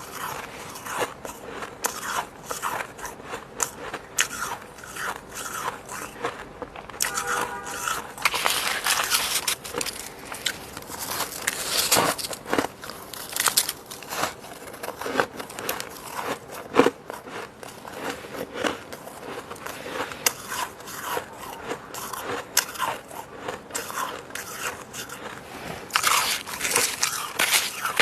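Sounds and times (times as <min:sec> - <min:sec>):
chewing crunchy frost: 0:00.0 - 0:28.0.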